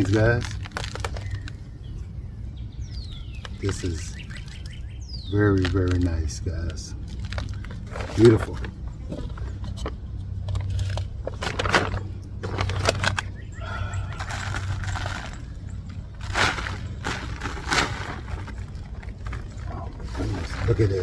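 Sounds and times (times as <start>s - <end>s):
steady low hum: 0.0s - 21.0s
hands digging through soil: 10.6s - 21.0s.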